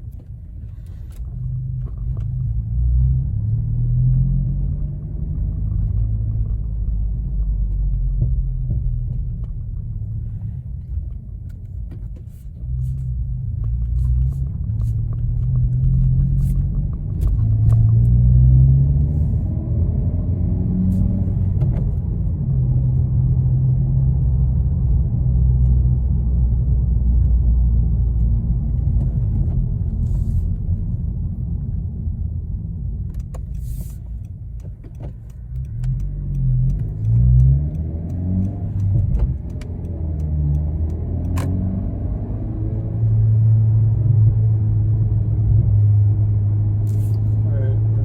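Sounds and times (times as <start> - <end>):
car engine hum: 0.0 - 48.0
road noise: 0.0 - 48.0.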